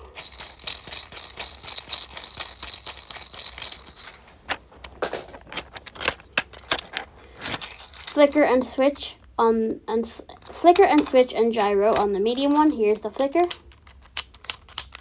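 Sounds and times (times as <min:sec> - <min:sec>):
fidget toy clicking rattle: 0:00.0 - 0:09.3, 0:10.2 - 0:15.0.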